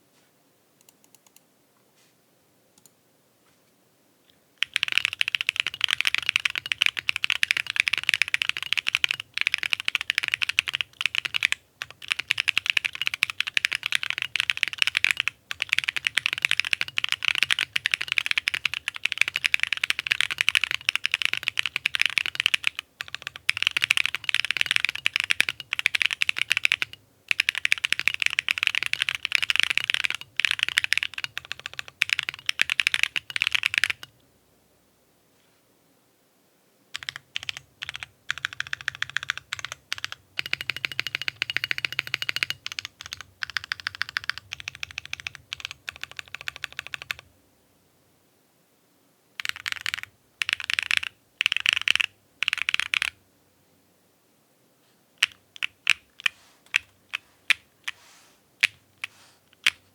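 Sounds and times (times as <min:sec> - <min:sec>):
fast typing on mechanical keyboard: 0:04.6 - 0:34.1, 0:37.0 - 0:47.3, 0:49.4 - 0:53.2, 0:55.2 - 0:58.0, 0:58.6 - 0:59.9.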